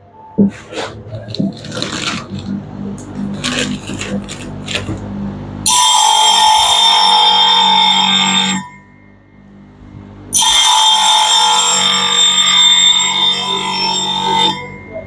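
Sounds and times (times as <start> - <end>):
blade grinding high metallic whine: 5.6 - 9.1, 10.3 - 15.0.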